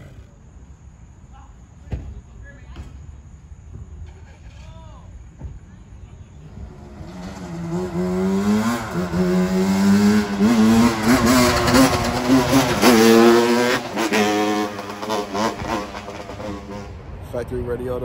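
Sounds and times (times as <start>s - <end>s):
vehicle engine revving: 6.4s - 17.4s.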